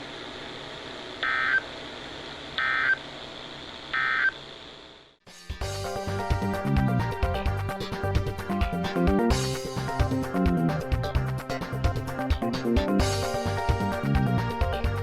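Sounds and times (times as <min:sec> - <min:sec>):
warbling data bursts: 0:01.2 - 0:01.7, 0:02.6 - 0:03.0, 0:03.9 - 0:04.4
music: 0:05.2 - 0:15.0.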